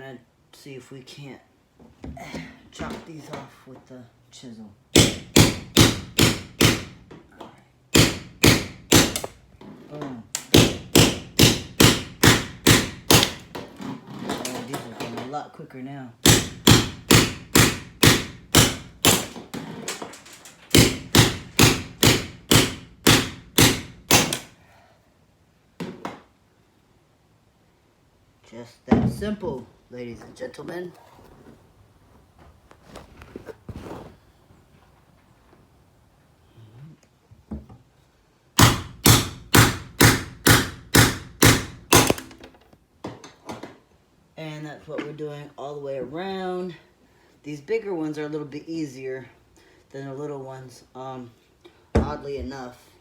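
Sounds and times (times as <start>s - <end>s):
hammer striking chisel: 5.0s - 7.0s, 7.9s - 9.4s, 10.4s - 13.5s, 16.2s - 20.0s, 20.7s - 24.5s, 38.6s - 42.3s.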